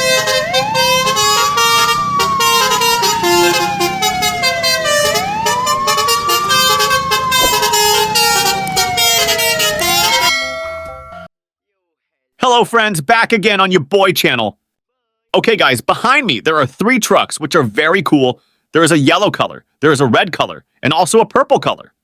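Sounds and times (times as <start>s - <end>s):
siren wailing: 0.0s - 10.4s
clicks and shifting tones: 0.0s - 11.2s.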